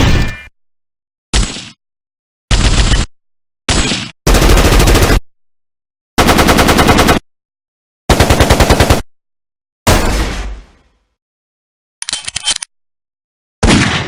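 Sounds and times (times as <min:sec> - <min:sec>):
automatic gunfire bursts: 0:06.2 - 0:07.2, 0:08.1 - 0:09.0.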